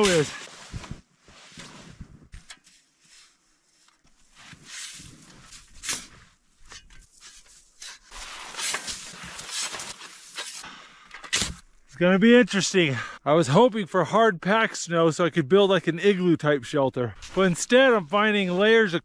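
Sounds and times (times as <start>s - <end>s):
shovel digging in snow: 0.0s - 0.9s, 4.3s - 6.2s, 7.2s - 10.6s, 11.3s - 11.6s.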